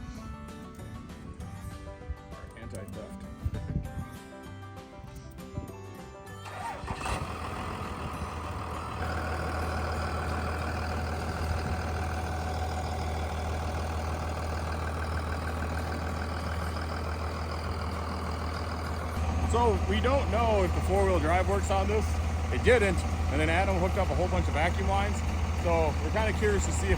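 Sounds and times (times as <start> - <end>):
pickup truck engine running: 6.4 - 26.9.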